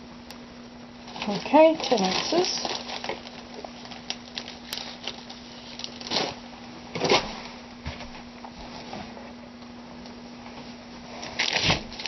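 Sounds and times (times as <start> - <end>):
steady low hum: 0.0 - 12.0
plastic bags rustling: 1.0 - 7.2, 11.2 - 12.0.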